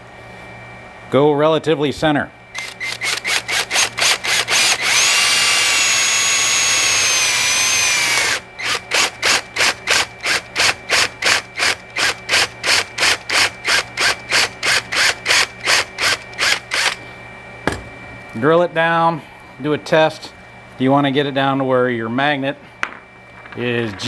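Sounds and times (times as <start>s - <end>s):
power drill boring into plastic: 2.6s - 17.0s.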